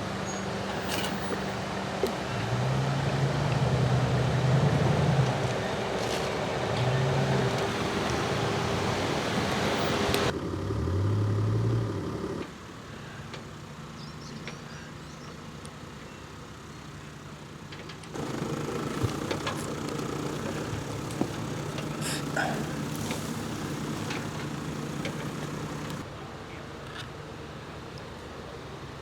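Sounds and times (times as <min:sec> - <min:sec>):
off-road engine revving: 0:00.0 - 0:12.6, 0:18.1 - 0:26.1.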